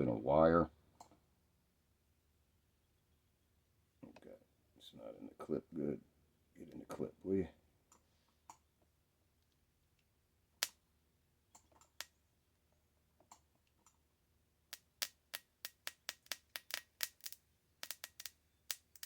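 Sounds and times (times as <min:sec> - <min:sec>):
small metal tools clicking: 0:14.7 - 0:19.0.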